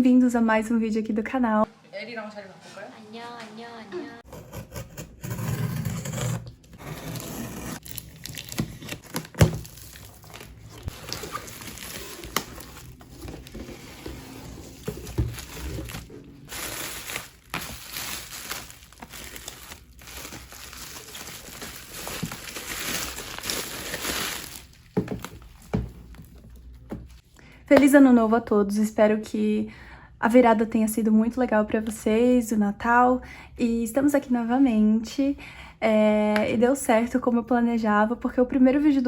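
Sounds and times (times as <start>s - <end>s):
packaging tearing: 7.0s - 13.5s, 15.2s - 24.8s
plastic and paper crinkling: 7.8s - 27.2s.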